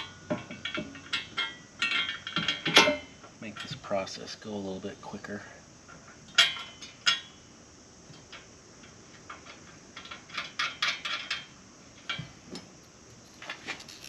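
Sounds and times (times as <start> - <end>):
metal parts clinking and clanking: 0.0 - 3.8, 6.3 - 7.3, 9.3 - 11.5, 12.1 - 14.0.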